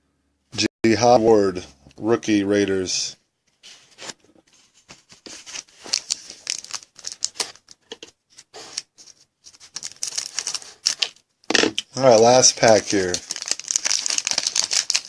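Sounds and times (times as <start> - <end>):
card pack wrapper crinkling: 4.8 - 15.0.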